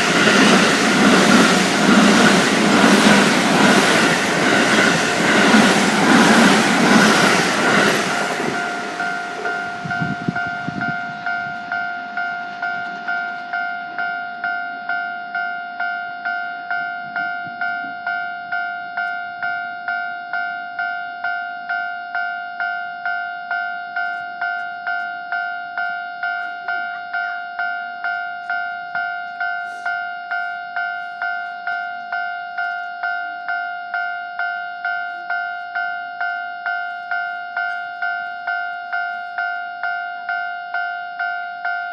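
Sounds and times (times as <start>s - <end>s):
train wheels running: 0.0s - 19.2s
level crossing warning bell: 0.0s - 41.9s.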